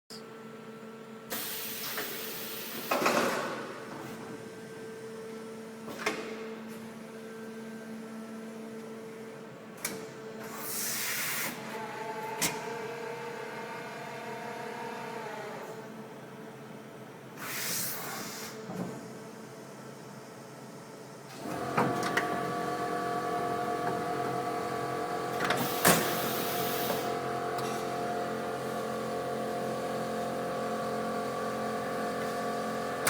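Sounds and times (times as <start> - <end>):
compressed air hiss: 17.4 - 18.6, 25.6 - 27.1.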